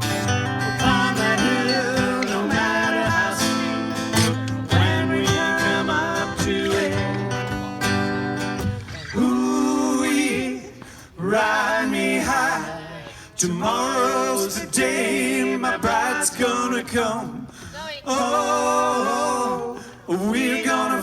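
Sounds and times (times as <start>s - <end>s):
man singing unaccompanied: 0.4s - 7.8s.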